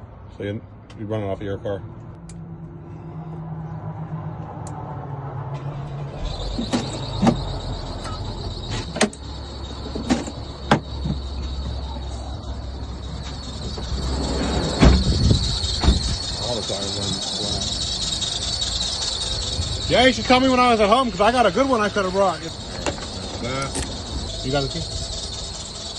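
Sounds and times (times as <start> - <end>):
air compressor buzzing drone: 6.2 - 25.9.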